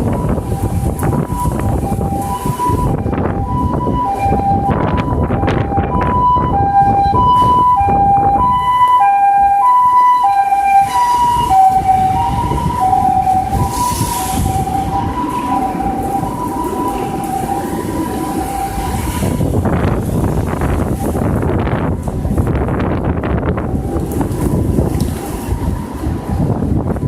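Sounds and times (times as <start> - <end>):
low wind rumble: 0.0 - 27.0
two-tone ambulance siren: 0.0 - 27.0.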